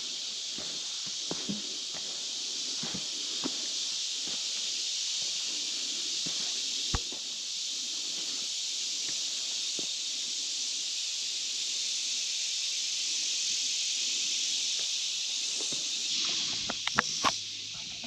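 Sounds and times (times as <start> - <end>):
footsteps on a trail: 0.0 - 5.5, 6.1 - 7.4
insect chorus drone: 0.0 - 18.0.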